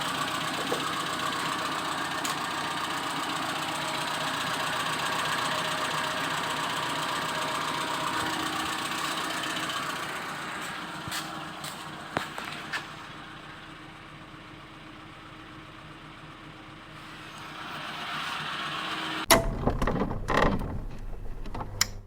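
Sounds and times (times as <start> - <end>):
car engine idling: 0.0 - 21.5
loud rumble and sharp knocks: 19.3 - 22.0.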